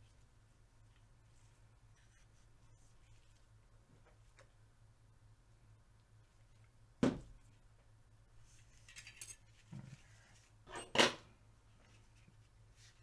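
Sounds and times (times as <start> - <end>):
sharp knock on work surface: 7.0 - 7.3.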